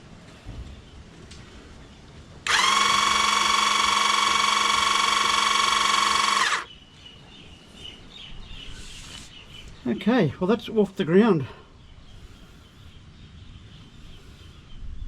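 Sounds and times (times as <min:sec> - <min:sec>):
hydraulic jack pump whining: 0:02.5 - 0:06.7.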